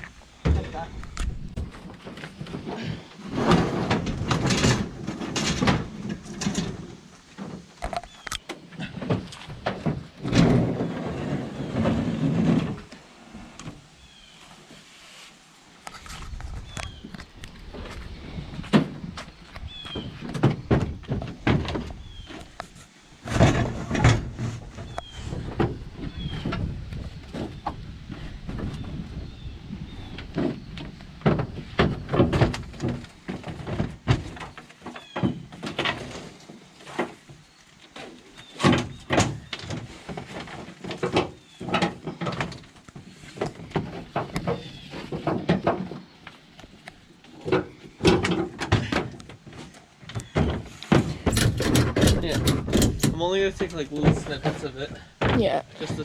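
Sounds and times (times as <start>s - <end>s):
gear knocking and rattling: 50.3s - 55.1s.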